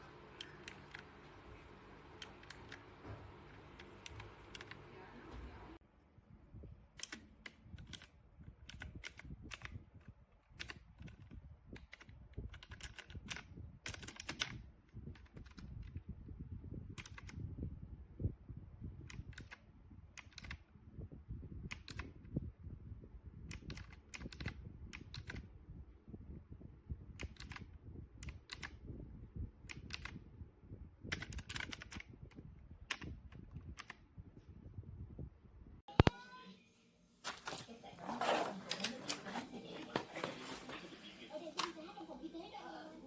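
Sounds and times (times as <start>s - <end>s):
clicky keyboard typing: 3.5s - 4.8s, 7.0s - 9.7s, 11.8s - 14.5s, 27.2s - 27.6s, 28.2s - 28.7s, 31.1s - 32.0s.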